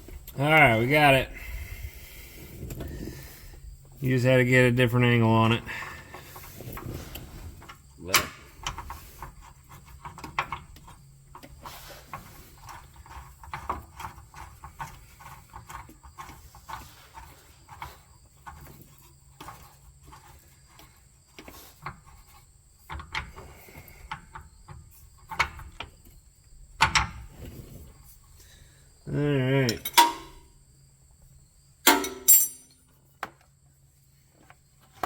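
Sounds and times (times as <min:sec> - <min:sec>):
metal tools clinking: 0:29.7 - 0:30.4, 0:31.9 - 0:32.9.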